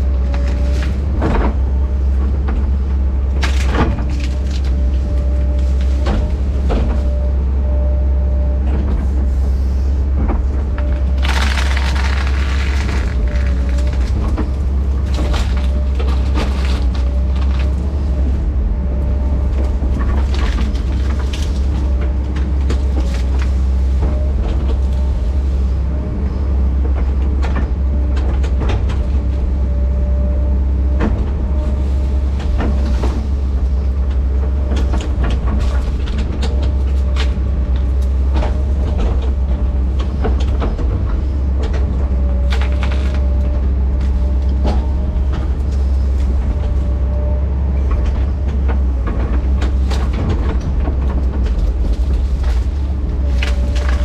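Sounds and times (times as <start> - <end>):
heavy diesel engine rumbling: 0.0 - 54.0.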